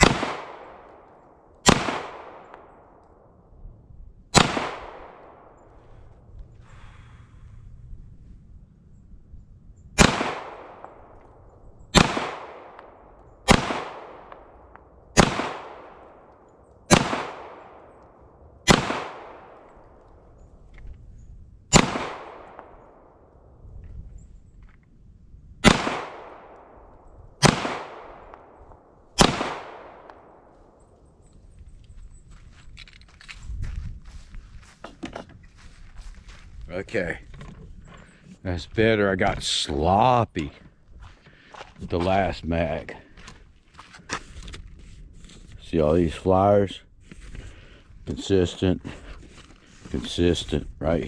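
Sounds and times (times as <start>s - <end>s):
pistol shots echoing: 0.0s - 3.0s, 4.3s - 5.6s, 10.0s - 11.2s, 11.9s - 20.0s, 21.7s - 23.3s, 25.6s - 30.8s.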